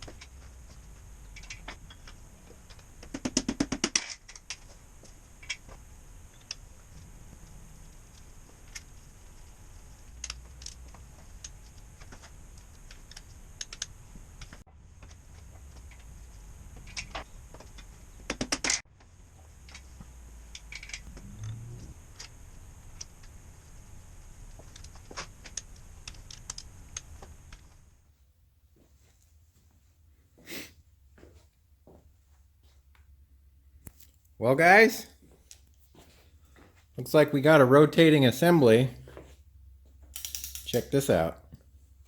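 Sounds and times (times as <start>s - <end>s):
hand ratchet clicking: 40.1s - 40.9s
metal tools clicking and tapping: 40.1s - 41.0s.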